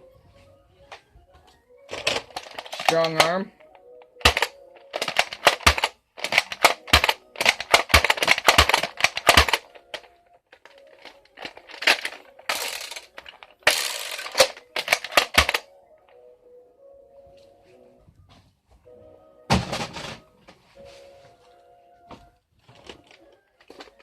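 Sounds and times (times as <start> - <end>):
faint background music: 0.0 - 24.0
plastic toy blaster clicking: 1.9 - 3.4, 4.2 - 15.7.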